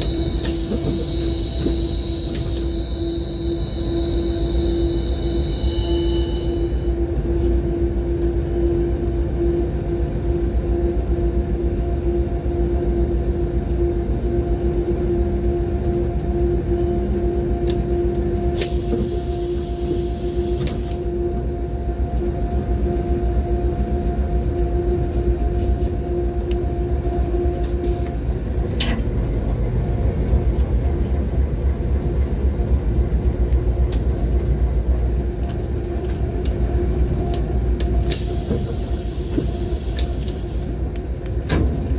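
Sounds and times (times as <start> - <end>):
constant humming tone: 0.0 - 41.9
train rumbling on track: 0.0 - 41.9.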